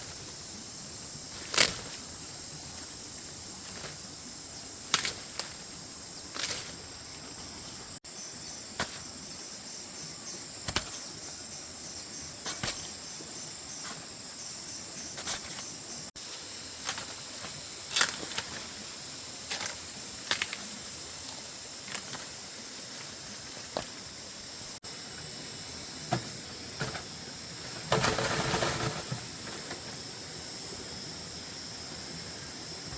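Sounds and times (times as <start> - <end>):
insects shrilling: 0.0 - 32.9
short snaps and rustles: 1.4 - 2.0, 10.7 - 11.0.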